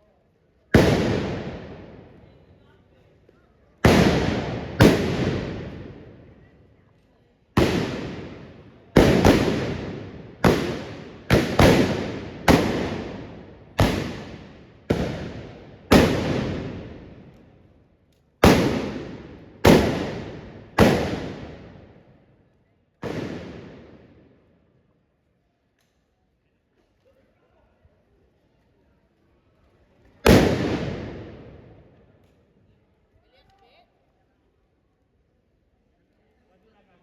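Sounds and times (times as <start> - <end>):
blunderbuss bangs with echo: 7.6 - 17.1.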